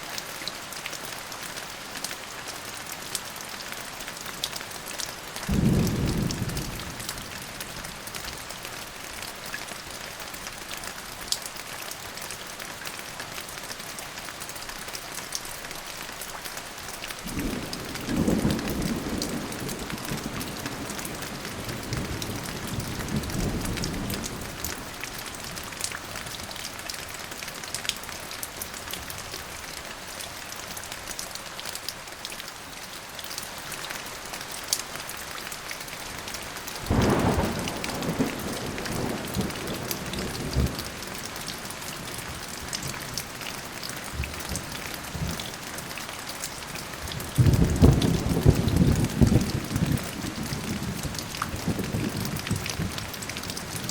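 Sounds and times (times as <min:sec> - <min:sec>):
heavy rain falling: 0:00.0 - 0:53.9
thunder rolling: 0:36.9 - 0:40.7, 0:47.4 - 0:53.0.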